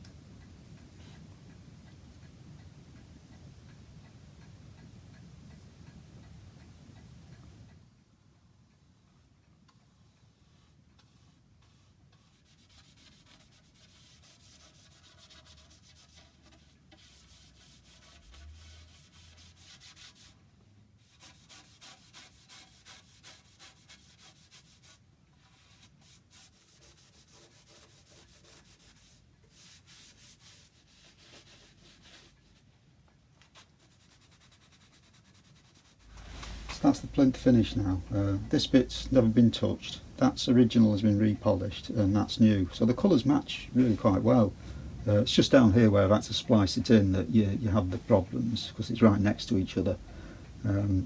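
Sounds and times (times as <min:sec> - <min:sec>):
brush strokes on wood: 0:09.0 - 0:20.4, 0:21.0 - 0:32.7, 0:33.4 - 0:51.0.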